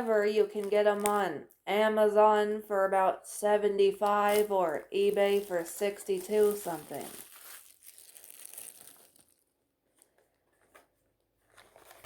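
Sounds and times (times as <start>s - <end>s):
foil wrapper crinkling and tearing: 4.2s - 9.5s.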